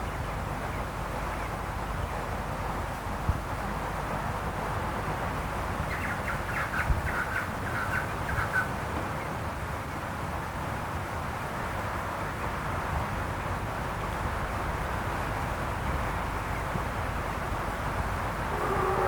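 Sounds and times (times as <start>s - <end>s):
background hiss and rumble: 0.0s - 19.0s
bird call notes: 18.5s - 19.0s.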